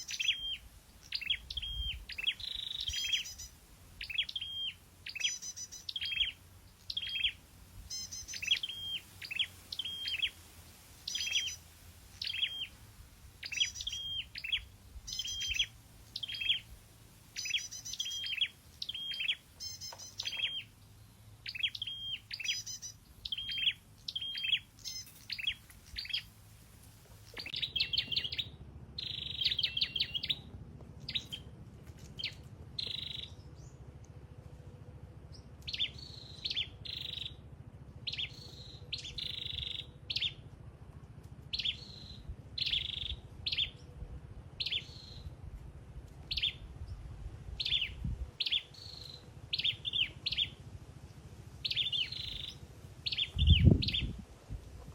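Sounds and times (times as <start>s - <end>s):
bird trills: 0.0s - 10.4s, 11.1s - 12.8s, 13.4s - 16.7s, 17.4s - 20.8s, 21.4s - 26.3s, 27.3s - 30.5s, 32.2s - 33.7s, 35.7s - 37.4s, 38.1s - 40.4s, 41.5s - 43.8s, 51.6s - 54.1s
songbird chirping: 0.0s - 10.4s, 11.0s - 12.8s, 13.4s - 26.4s, 27.1s - 34.2s, 35.3s - 37.4s, 38.0s - 40.6s, 41.5s - 45.3s, 46.3s - 47.0s, 47.6s - 50.6s, 51.6s - 54.3s.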